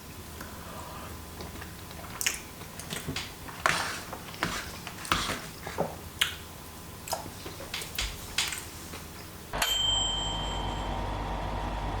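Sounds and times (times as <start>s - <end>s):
bell-like ding: 9.6s - 11.0s.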